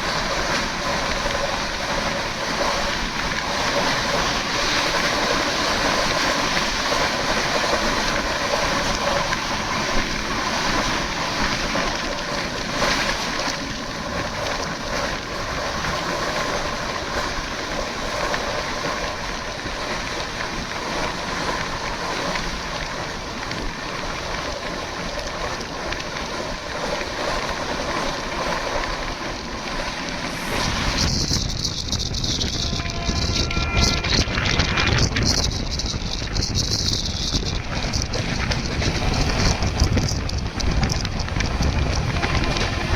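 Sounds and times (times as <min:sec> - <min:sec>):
train wheels rumbling on track: 0:26.7 - 0:42.9.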